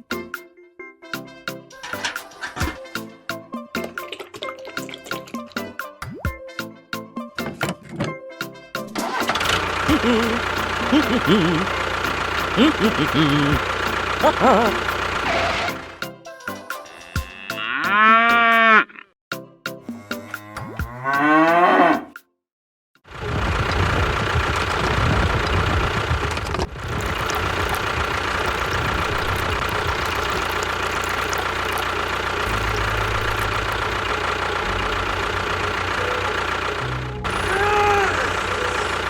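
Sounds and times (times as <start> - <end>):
machine humming: 9.4 - 16.0, 23.2 - 39.0
cow mooing: 16.9 - 19.0, 19.8 - 22.1.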